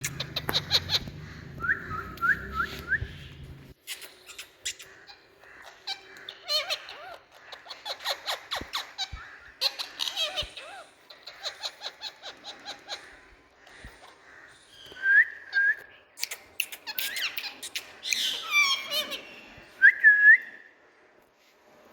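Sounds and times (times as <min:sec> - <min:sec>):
parrot whistling: 0:00.0 - 0:03.5
parrot squawks and chirps: 0:00.0 - 0:15.0, 0:16.2 - 0:19.6.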